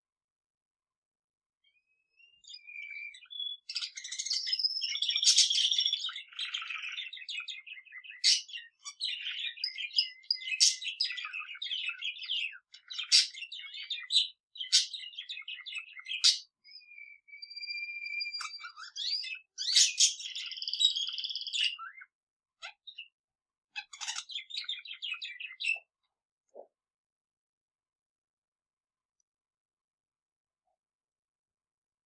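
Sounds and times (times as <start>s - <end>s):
budgerigar and canary singing: 1.6s - 26.7s.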